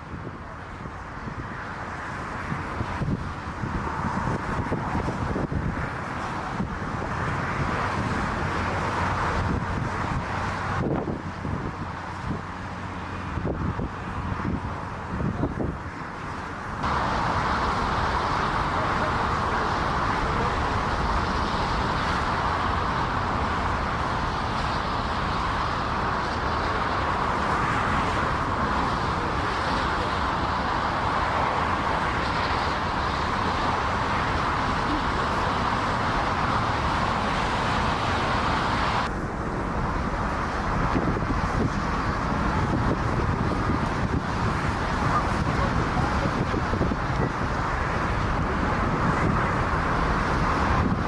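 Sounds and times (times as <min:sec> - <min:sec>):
jet engines running: 0:00.0 - 0:51.0.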